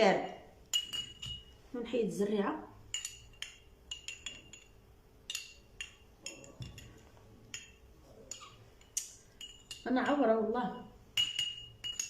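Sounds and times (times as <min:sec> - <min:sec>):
utensil clinking against glass: 0:00.7 - 0:01.5, 0:02.9 - 0:10.2, 0:11.1 - 0:12.0.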